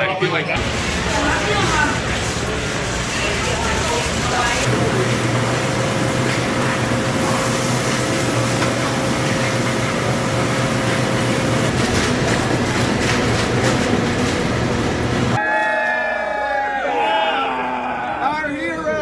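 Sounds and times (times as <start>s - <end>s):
train rumbling on rails: 0.6s - 15.4s.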